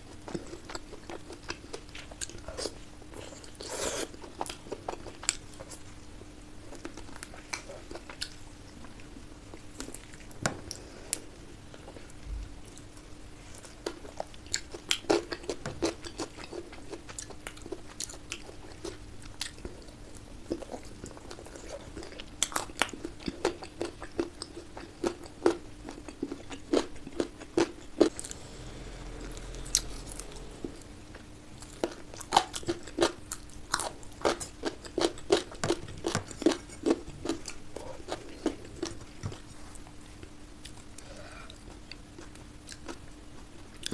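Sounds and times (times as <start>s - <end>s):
faint steady hum: 28.0s - 32.4s.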